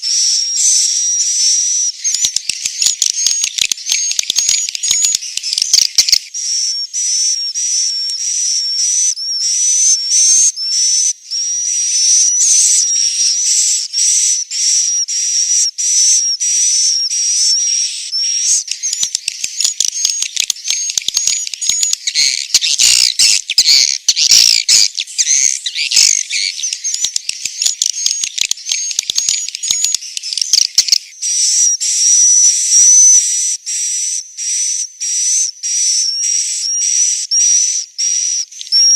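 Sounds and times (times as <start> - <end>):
swiftlets twittering: 18.5 - 31.0.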